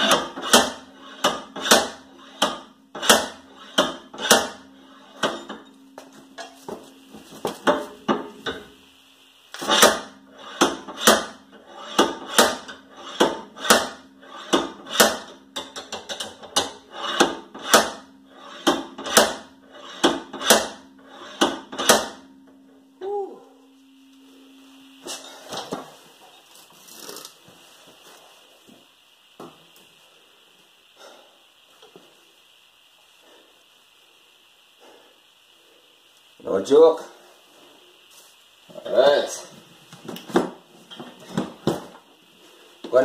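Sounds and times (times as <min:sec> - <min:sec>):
hammer striking metal chisel: 0:09.7 - 0:22.2.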